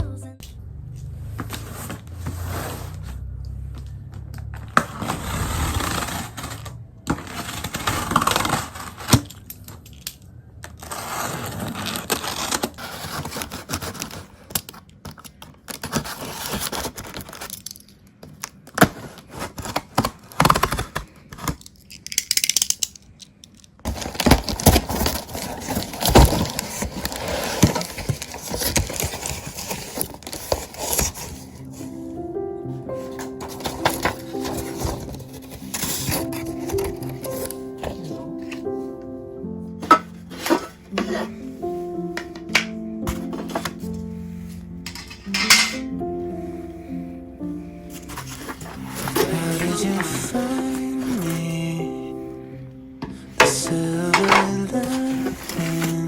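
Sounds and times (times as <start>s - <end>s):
rustling and scraping: 1.0s - 32.1s, 32.8s - 38.9s, 39.7s - 46.9s, 47.6s - 52.0s, 53.0s - 56.0s
clicks knocks and clinks: 44.9s - 45.9s.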